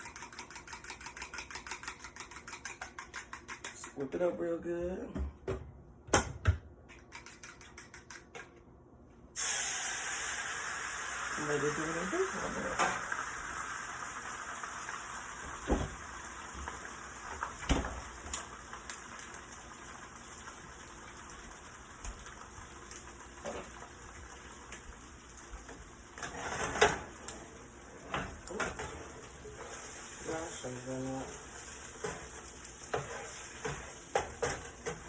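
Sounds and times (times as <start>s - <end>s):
eggs sizzling in a frying pan: 9.4s - 35.0s.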